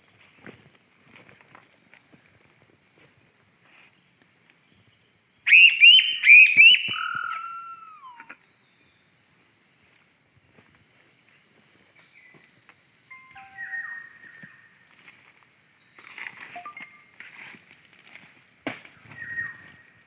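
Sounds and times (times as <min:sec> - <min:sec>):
whistled bird-like notes: 0:05.5 - 0:08.3, 0:13.1 - 0:14.6, 0:16.2 - 0:17.2.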